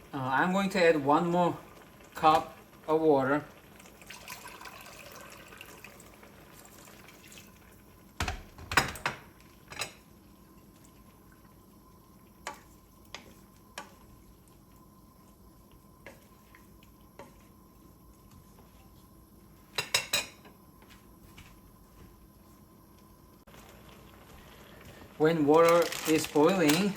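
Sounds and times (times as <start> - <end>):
cookware and utensils clinking: 8.2 - 10.7, 19.7 - 20.6, 25.4 - 26.9.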